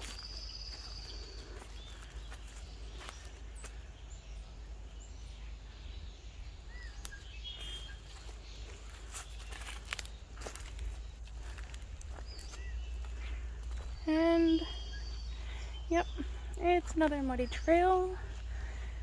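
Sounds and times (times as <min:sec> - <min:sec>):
wind rumbling on microphone: 0:06.0 - 0:19.0.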